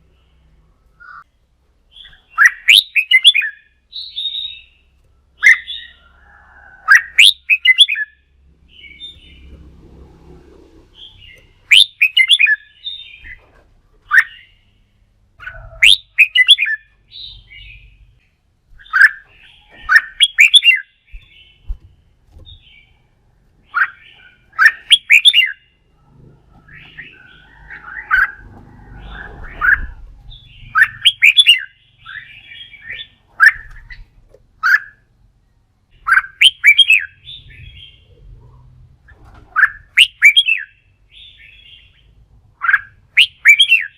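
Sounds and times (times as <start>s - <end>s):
bird singing: 0.0s - 9.6s, 10.9s - 38.4s, 39.6s - 43.9s.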